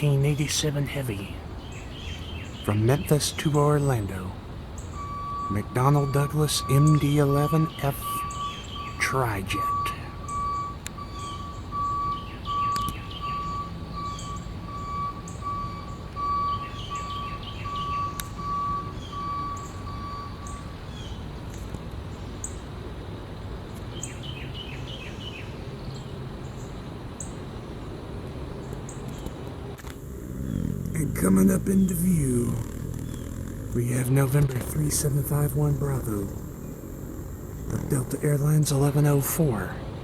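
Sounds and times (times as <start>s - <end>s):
faint low rumble: 29.8s - 40.0s.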